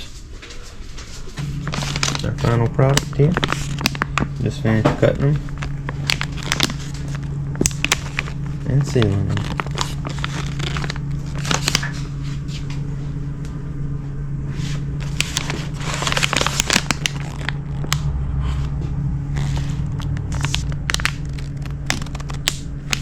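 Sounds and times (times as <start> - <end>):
steady low hum: 0.0 - 23.0
plastic bags crinkling: 1.4 - 12.1, 15.0 - 18.1, 19.3 - 23.0.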